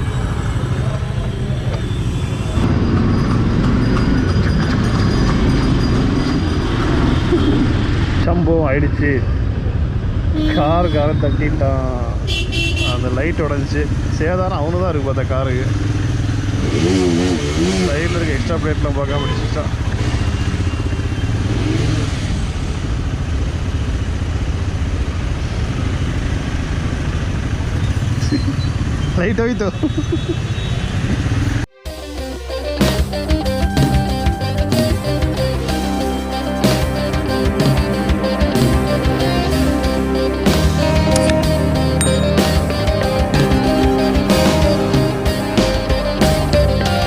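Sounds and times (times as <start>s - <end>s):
motorcycle engine and road rumble: 0.0s - 31.7s, 32.9s - 47.0s
motorcycle engine running: 13.8s - 18.9s, 32.8s - 47.0s.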